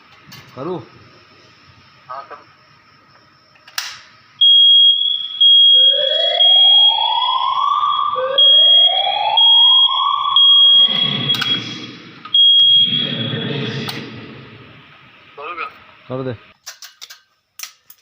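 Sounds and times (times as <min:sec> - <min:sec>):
high pulsing alarm beep: 0:04.4 - 0:14.1
rough low noise: 0:09.4 - 0:16.1.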